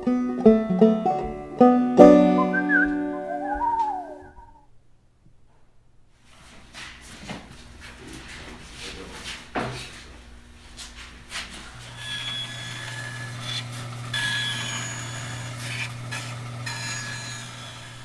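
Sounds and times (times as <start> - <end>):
power tool motor whining: 11.7 - 18.0.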